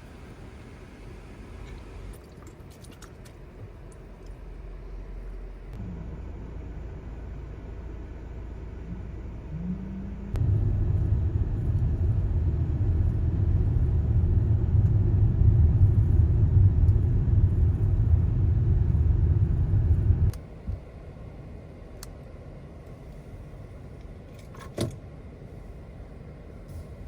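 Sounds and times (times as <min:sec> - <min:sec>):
car cabin rumble: 0:08.6 - 0:20.8.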